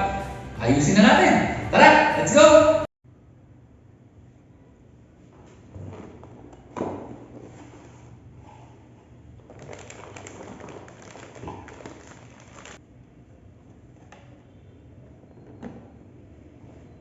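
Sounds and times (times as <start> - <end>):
rustling and scraping: 5.2 - 12.8.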